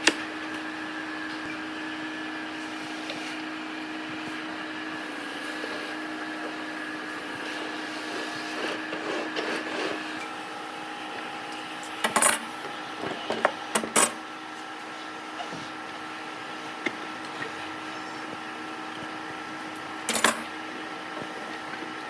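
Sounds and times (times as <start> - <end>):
steady machine hum: 0.0 - 22.0
clatter of hard objects: 20.1 - 20.5.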